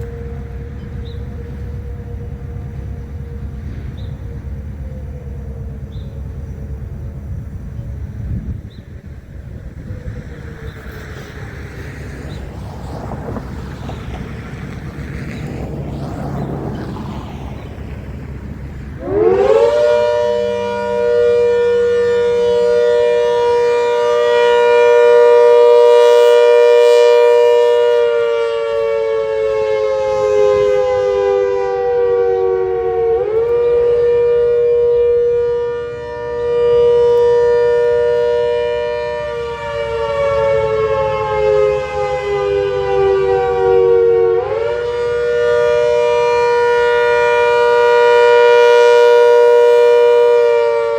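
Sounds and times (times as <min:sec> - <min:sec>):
warning siren winding up: 0:18.0 - 0:50.9.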